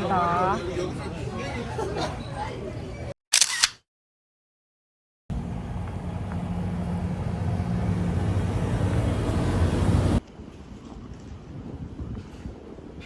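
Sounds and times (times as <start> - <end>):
vehicle rumble and hum: 5.3 - 10.2.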